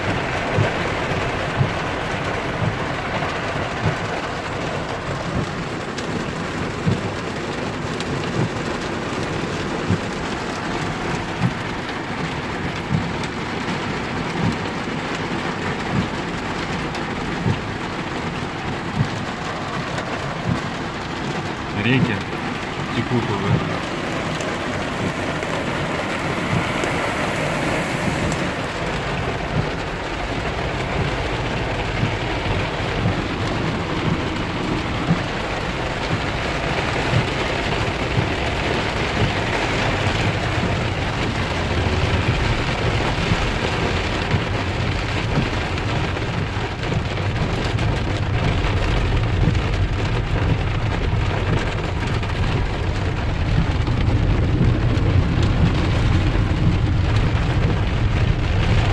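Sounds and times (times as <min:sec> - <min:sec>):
heavy rain on a car: 0:00.0 - 0:58.9.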